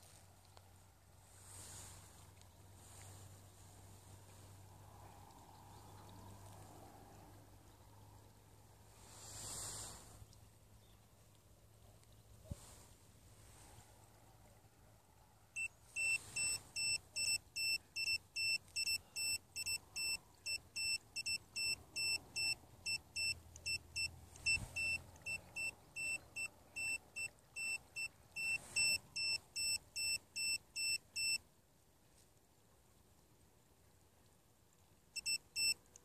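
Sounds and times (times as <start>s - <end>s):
high electronic beep: 15.6s - 31.4s.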